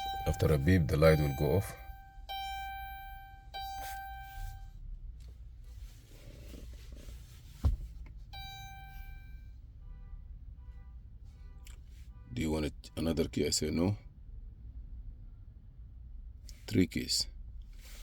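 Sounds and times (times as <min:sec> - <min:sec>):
electronic beeps: 0:00.0 - 0:04.7, 0:08.4 - 0:09.2.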